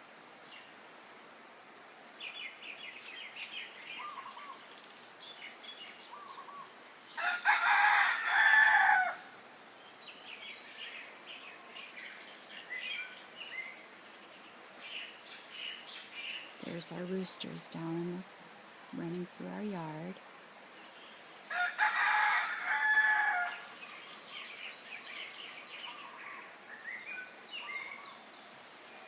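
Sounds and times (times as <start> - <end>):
small birds chirping: 1.4 - 7.6, 9.6 - 21.7, 22.8 - 29.0
rooster crowing: 7.2 - 9.4, 21.5 - 23.7.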